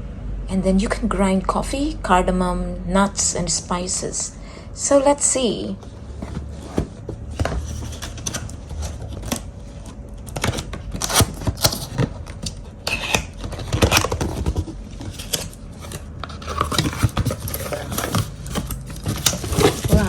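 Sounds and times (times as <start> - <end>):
packaging scraping and tearing: 6.1 - 20.0.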